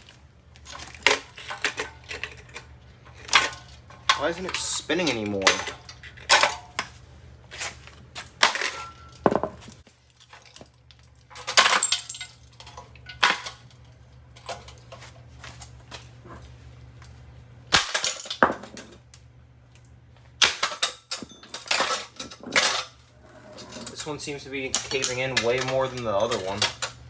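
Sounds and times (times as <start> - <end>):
low steady hum: 0.0 - 27.0
blows clanking on metal fan: 21.2 - 27.0.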